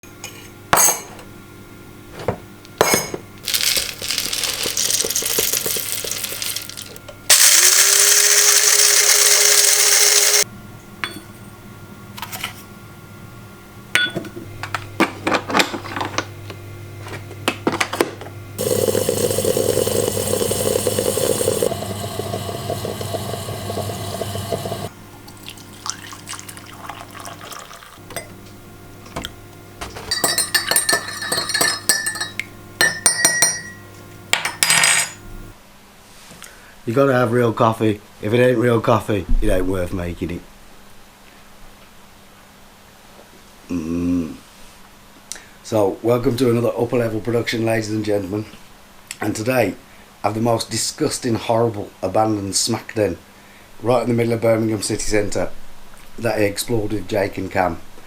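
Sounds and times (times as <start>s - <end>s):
cups and utensils clinking: 2.8s - 7.5s, 18.6s - 28.4s, 29.1s - 35.2s
electric motor whine: 6.5s - 10.4s, 18.6s - 24.9s.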